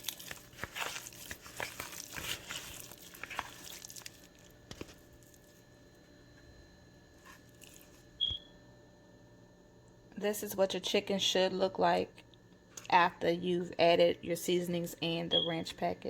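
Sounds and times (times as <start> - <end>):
hands mixing raw chicken: 0.0 - 5.6, 7.2 - 8.2
faint steady hum: 0.0 - 16.0.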